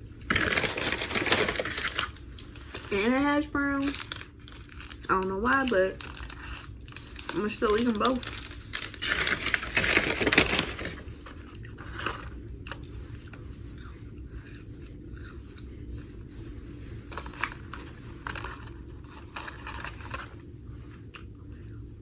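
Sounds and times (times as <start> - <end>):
person chewing crunchy food: 5.9 - 7.3, 8.2 - 20.4.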